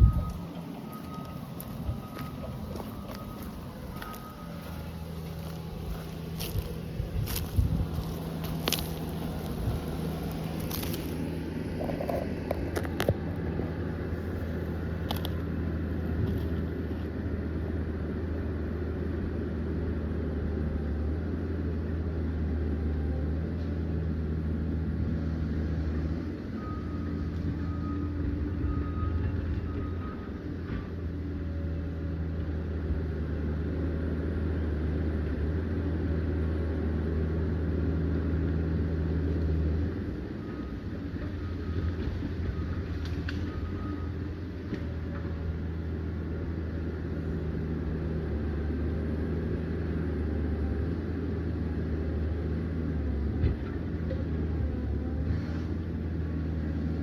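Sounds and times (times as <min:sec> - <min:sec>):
short repeated beeps: 0:00.0 - 0:04.6
bulldozer diesel engine droning: 0:00.0 - 0:57.0.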